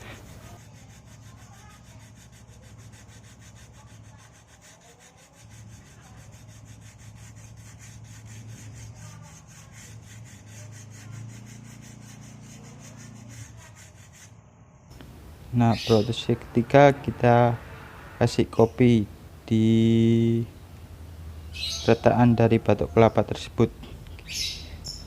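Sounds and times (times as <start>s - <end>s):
sandpaper rubbing on coconut shell: 0.0s - 14.4s, 15.0s - 17.6s.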